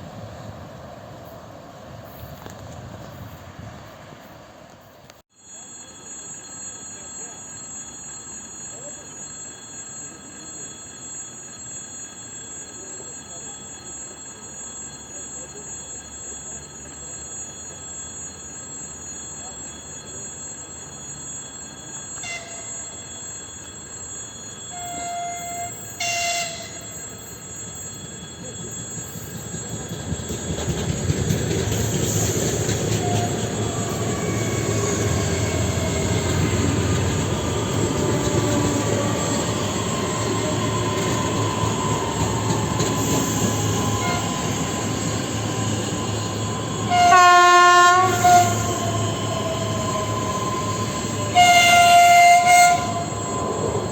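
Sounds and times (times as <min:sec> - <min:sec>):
electric train running past: 0:00.0 - 0:53.9
train horn: 0:22.2 - 0:22.9, 0:24.7 - 0:27.0, 0:43.9 - 0:44.6, 0:46.9 - 0:49.0, 0:50.0 - 0:53.3.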